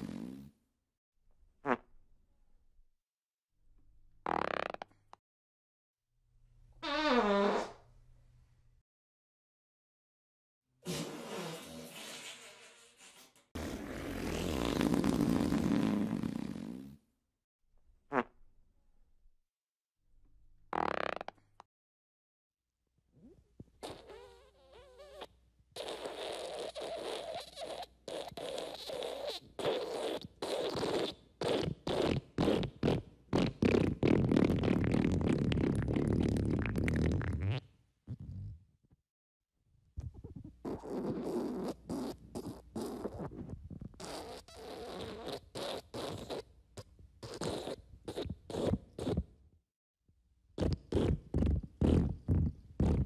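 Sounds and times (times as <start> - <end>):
raspy fart sound effects: 0.0 - 0.6, 1.6 - 1.9, 4.2 - 5.0, 6.8 - 7.9, 10.8 - 17.1, 18.1 - 18.4, 20.7 - 21.4, 23.2 - 38.6, 40.1 - 46.5, 47.2 - 49.3, 50.6 - 53.0.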